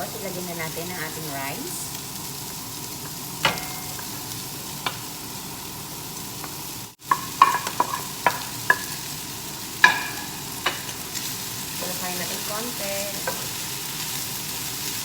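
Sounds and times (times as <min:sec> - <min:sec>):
rice sizzling in a hot pan: 0:00.0 - 0:15.0
utensil clinking against pan: 0:03.4 - 0:04.1.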